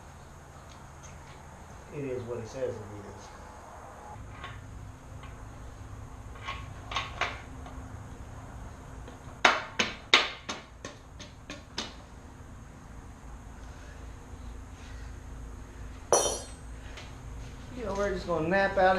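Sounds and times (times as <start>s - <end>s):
tools and parts knocking: 9.4s - 12.0s, 16.1s - 16.6s.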